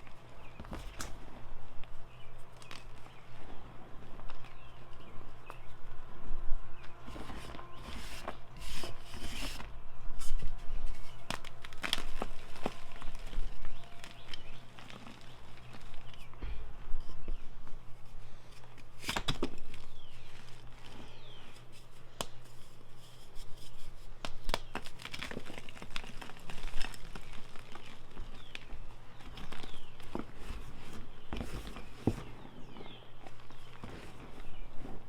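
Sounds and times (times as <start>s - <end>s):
chalk blocks crunching: 6.8s - 16.6s, 18.2s - 35.0s.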